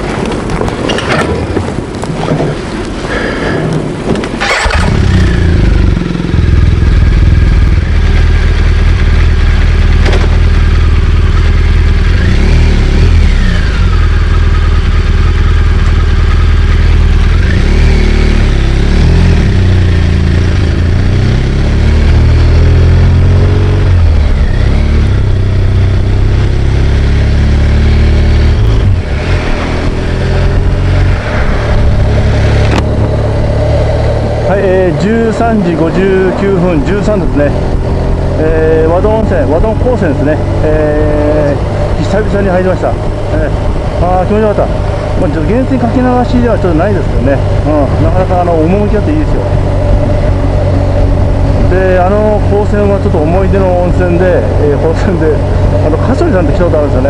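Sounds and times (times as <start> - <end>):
wind noise: 0.0 - 8.1, 28.4 - 40.8, 46.6 - 56.3
road noise: 0.0 - 57.0
motorcycle engine running: 4.4 - 57.0.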